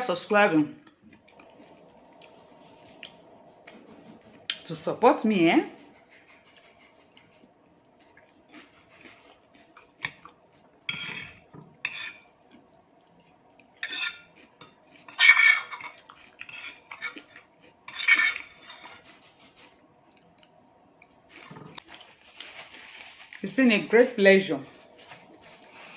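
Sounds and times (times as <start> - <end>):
fork clinking and scraping on plate: 10.9 - 12.3, 13.8 - 19.0.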